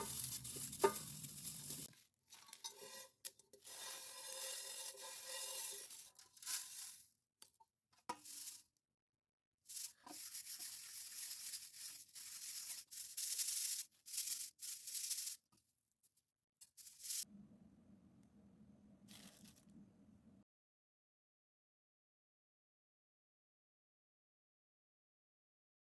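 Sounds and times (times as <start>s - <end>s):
dry plants rustling under hands: 0.0s - 2.6s, 9.7s - 15.4s, 19.1s - 19.7s.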